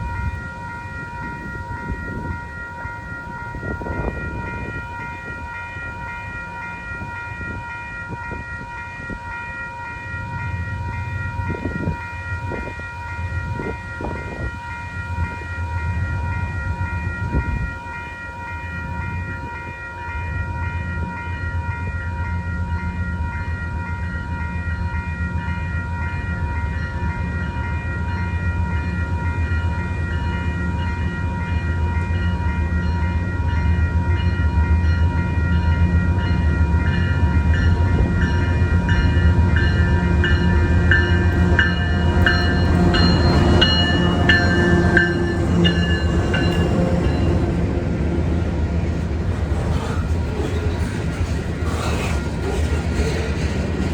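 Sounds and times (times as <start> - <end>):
train rumbling: 0.0 - 20.5, 23.4 - 53.9
steady high-pitched tones: 35.2 - 49.5.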